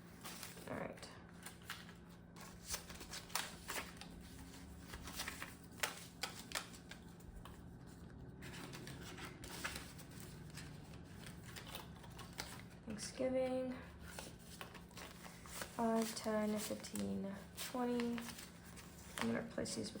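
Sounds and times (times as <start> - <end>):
banknotes rustling: 0.0 - 13.0, 13.8 - 20.0.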